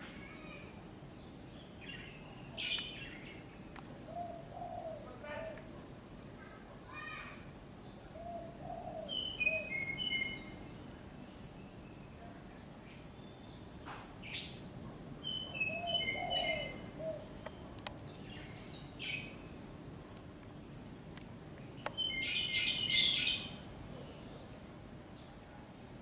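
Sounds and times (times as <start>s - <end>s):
small birds chirping: 0.0s - 26.0s
dove cooing: 4.1s - 5.6s, 8.2s - 9.8s, 15.6s - 17.4s.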